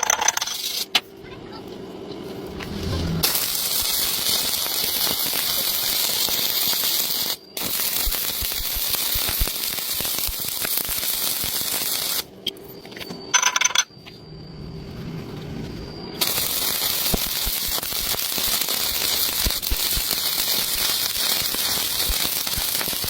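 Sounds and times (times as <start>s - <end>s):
welding arc crackling: 0.5s - 1.0s, 2.5s - 12.3s, 16.2s - 23.0s.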